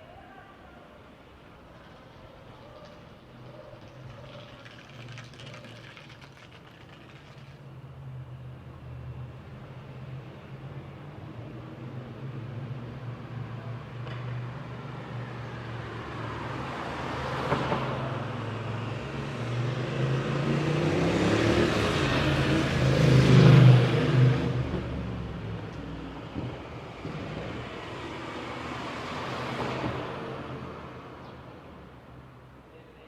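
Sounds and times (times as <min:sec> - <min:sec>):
steady traffic hum: 0:00.0 - 0:33.0
vehicle passing by: 0:14.7 - 0:31.2.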